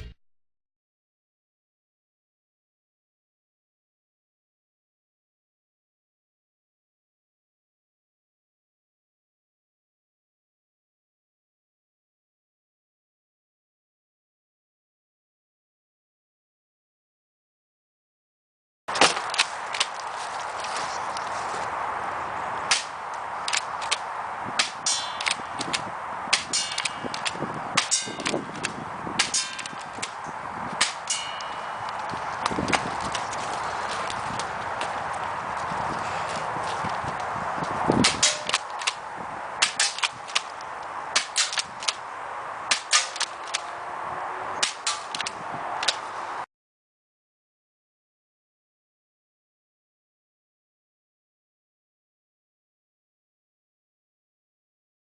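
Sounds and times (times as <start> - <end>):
airsoft shotgun snaps and clacks: 19.0 - 20.1, 22.7 - 30.2, 38.0 - 39.0, 39.6 - 42.0, 42.7 - 43.7, 44.6 - 46.0
airsoft shotgun snaps and clicks: 39.6 - 40.6, 42.7 - 43.7.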